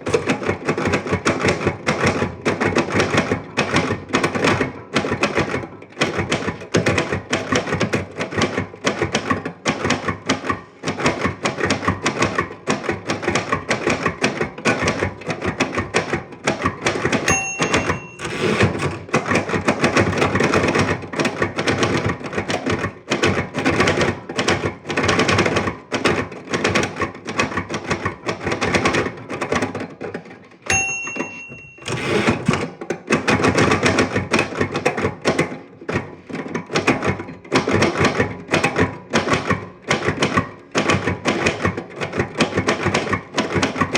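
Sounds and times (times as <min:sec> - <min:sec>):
typewriter keys clattering: 0:00.0 - 0:43.9
typewriter margin bell: 0:17.2 - 0:19.5, 0:30.7 - 0:32.6.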